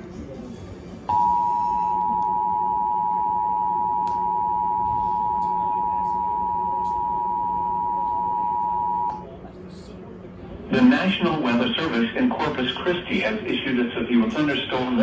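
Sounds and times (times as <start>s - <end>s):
two-tone alert signal: 1.1s - 9.1s.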